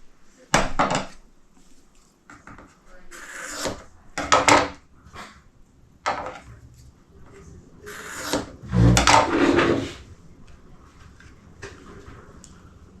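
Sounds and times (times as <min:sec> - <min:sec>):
objects rustling on hard surface: 0:08.6 - 0:10.1.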